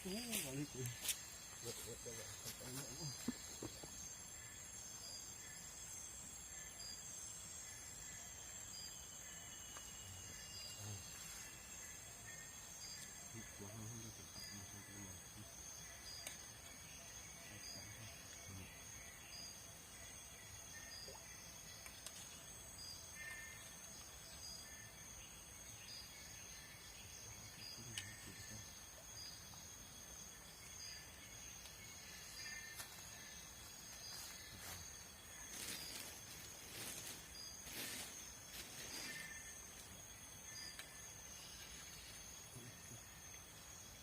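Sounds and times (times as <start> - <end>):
insects shrilling: 0.0 - 7.3, 31.0 - 44.0
short insect chirp: 0.0 - 44.0.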